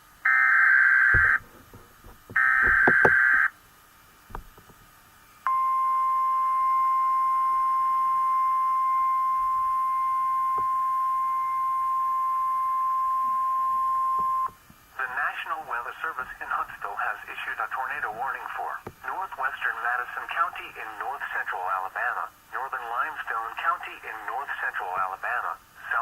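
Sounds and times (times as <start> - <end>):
steady warning alarm tone: 0.3 - 1.5, 2.3 - 3.5
faint static clicks: 1.0 - 5.5, 14.0 - 26.0.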